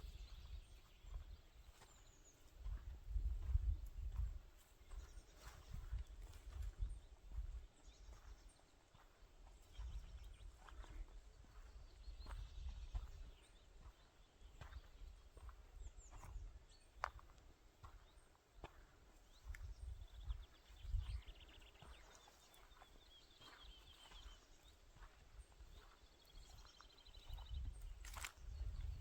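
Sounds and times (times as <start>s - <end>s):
wind rumble on microphone: 0.0s - 1.9s, 2.6s - 8.4s, 9.5s - 13.9s, 14.6s - 17.3s, 19.4s - 22.1s, 25.0s - 29.0s
songbird twittering: 0.0s - 29.0s.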